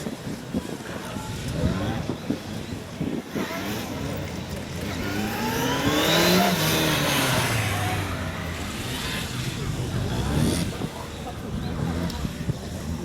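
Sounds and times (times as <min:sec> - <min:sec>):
motorcycle engine revving: 0:03.2 - 0:13.0.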